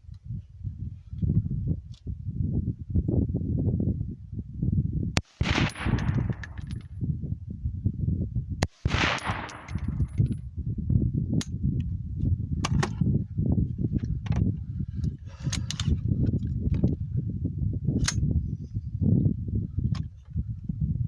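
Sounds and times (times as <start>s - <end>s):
constant low rumble: 0.0s - 21.0s
rifle shot with echo: 5.2s - 6.8s, 8.7s - 10.3s.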